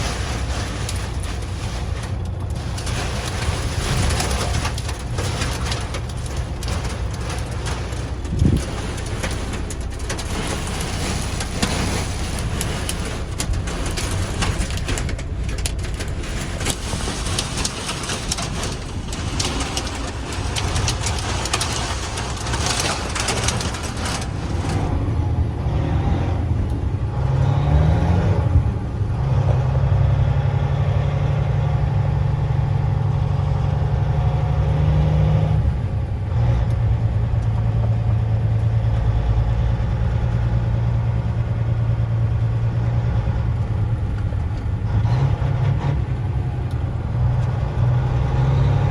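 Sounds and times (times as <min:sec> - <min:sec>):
vehicle engine humming: 0:00.0 - 0:30.1.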